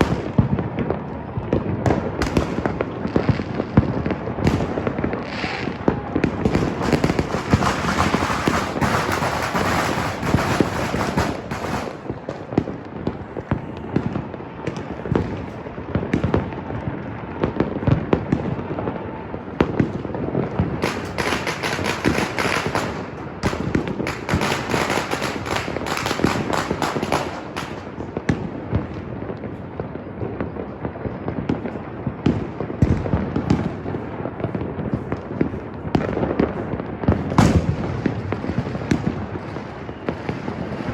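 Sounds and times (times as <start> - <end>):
fireworks and firecrackers crackling: 0.0 - 40.9.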